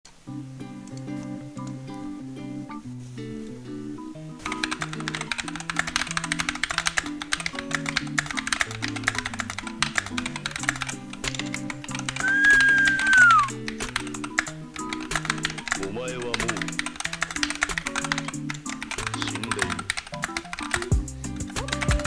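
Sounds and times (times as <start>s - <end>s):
background music: 0.1s - 22.0s
mechanical keyboard typing: 4.4s - 22.0s
high tone sliding down: 12.2s - 13.6s.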